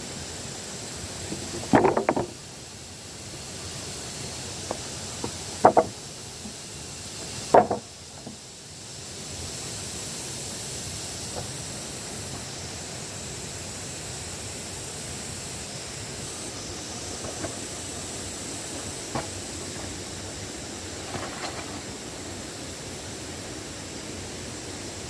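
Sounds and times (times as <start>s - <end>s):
steady rushing background noise: 0.0s - 25.0s
sharp knocks: 1.3s - 2.3s, 4.7s - 6.0s, 7.5s - 8.4s.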